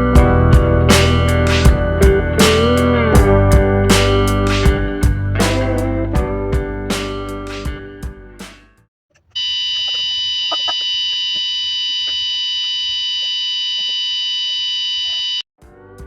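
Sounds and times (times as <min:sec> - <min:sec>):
high-pitched alarm buzzer: 0:09.4 - 0:15.4.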